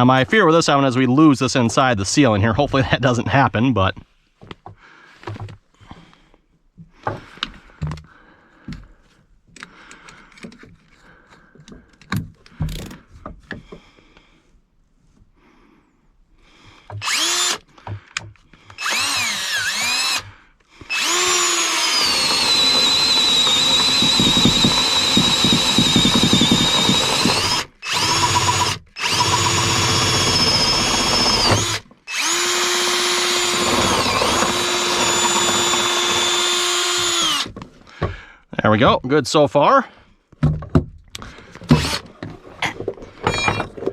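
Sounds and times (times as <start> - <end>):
power drill boring through wood: 16.9 - 37.6, 41.2 - 42.1, 43.2 - 43.8.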